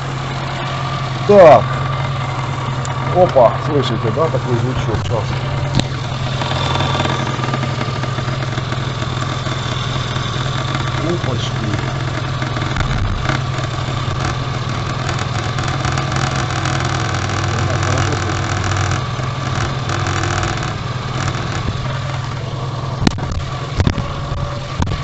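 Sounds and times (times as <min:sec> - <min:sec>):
engine idling: 0:00.0 - 0:25.0
scraping rattle under floor: 0:05.7 - 0:11.1, 0:11.8 - 0:22.3.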